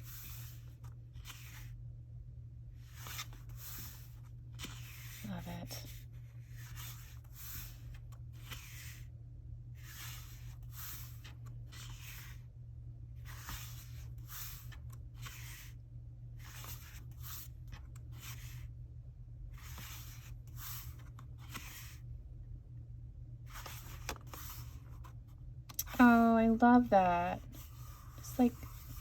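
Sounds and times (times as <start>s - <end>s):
paper pages rustling: 0.0s - 1.7s, 2.9s - 5.2s, 6.4s - 9.0s, 9.8s - 12.4s, 13.2s - 15.8s, 16.4s - 18.6s, 19.6s - 22.0s, 23.5s - 25.2s
steady low hum: 0.0s - 29.0s.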